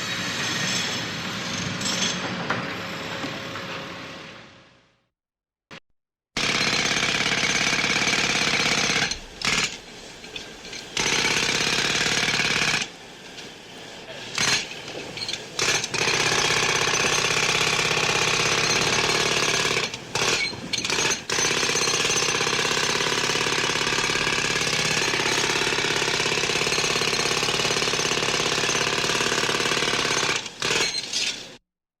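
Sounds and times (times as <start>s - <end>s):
jackhammer hammering: 6.4s - 9.8s, 11.0s - 12.9s, 14.4s - 14.8s, 15.6s - 31.0s.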